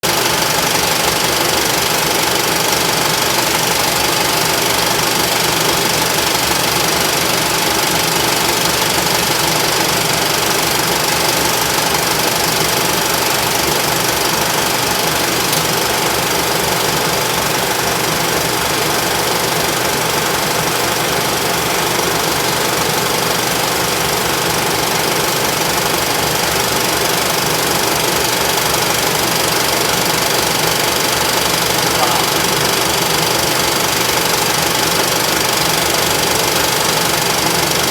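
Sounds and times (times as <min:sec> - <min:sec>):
film projector clatter and whir: 0:00.0 - 0:37.9.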